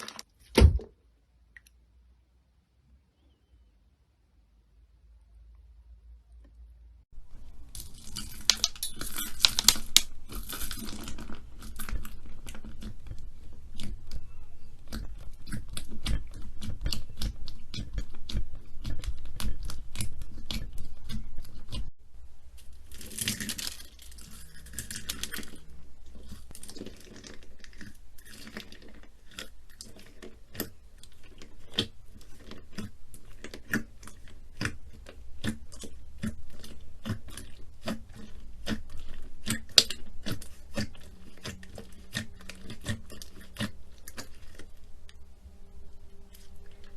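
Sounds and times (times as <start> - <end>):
slime squelching: 7.2 - 46.9
slime crackling and popping: 7.6 - 21.9, 22.6 - 45.2.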